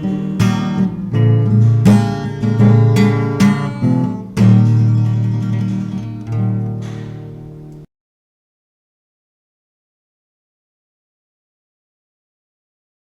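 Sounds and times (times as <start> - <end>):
acoustic guitar strumming chords: 0.0 - 7.9.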